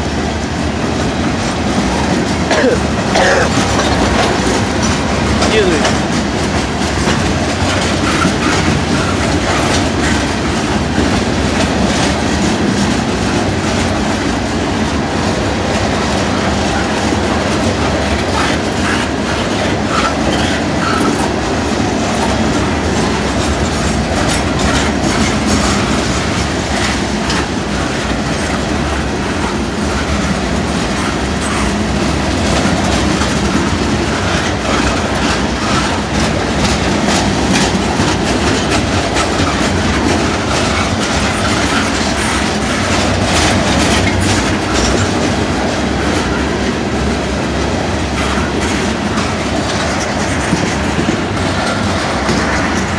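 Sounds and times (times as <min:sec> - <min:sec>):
train wheels rumbling on rail: 0:00.0 - 0:52.9
clicks over rail joints: 0:22.2 - 0:46.4.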